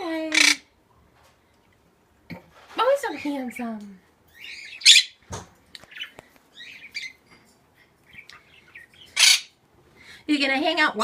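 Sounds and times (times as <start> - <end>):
parrots chirping and squawking: 0.1 - 0.8, 4.3 - 9.6.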